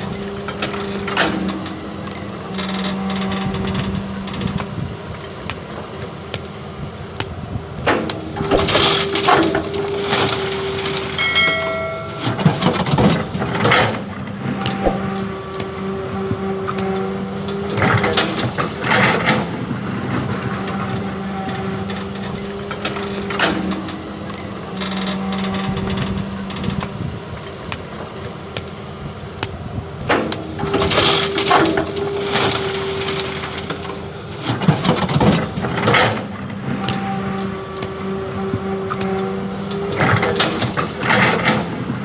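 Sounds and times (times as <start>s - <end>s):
clatter and scraping of digging arm: 7.9s - 11.2s, 39.9s - 41.9s.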